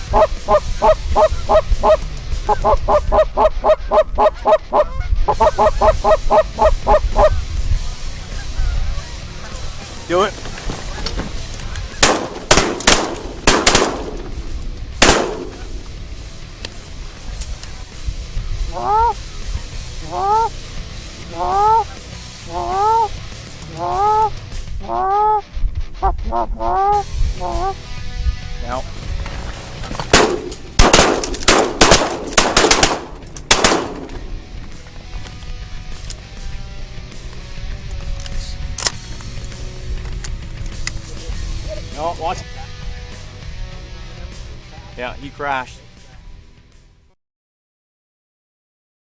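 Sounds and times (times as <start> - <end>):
shotgun shots: 12.0 - 14.4, 15.0 - 15.8, 30.1 - 34.3.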